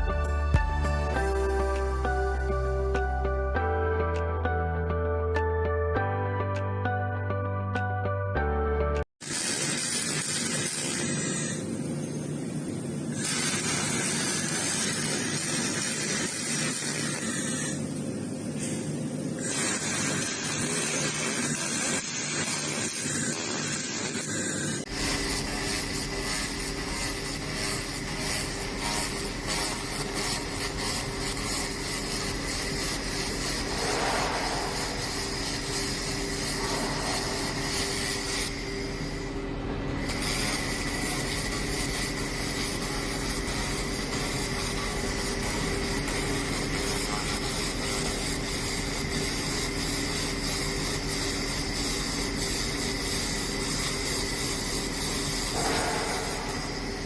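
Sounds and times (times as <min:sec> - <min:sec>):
laser machine hissing buzz: 0:00.0 - 0:02.7, 0:09.2 - 0:57.0
constant hum with steady tones: 0:24.6 - 0:57.0.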